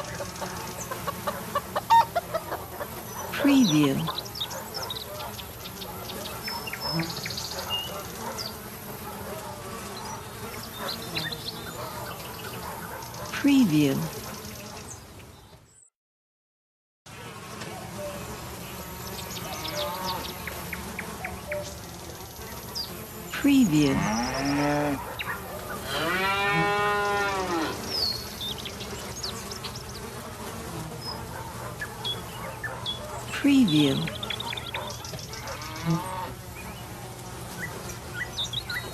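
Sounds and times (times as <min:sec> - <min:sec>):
flies buzzing: 0:00.0 - 0:15.6, 0:17.1 - 0:38.9
cow mooing: 0:23.6 - 0:25.0, 0:25.8 - 0:27.9, 0:35.5 - 0:36.3.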